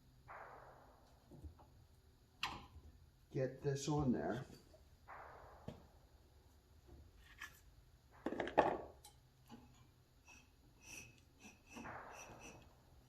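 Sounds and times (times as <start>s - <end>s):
faint rubbing of metal parts: 9.5s - 13.0s.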